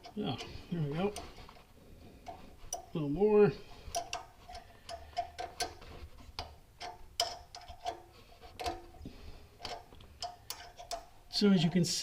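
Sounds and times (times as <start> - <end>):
wrench clicking on metal: 3.9 - 5.8, 6.4 - 9.0, 9.6 - 12.0.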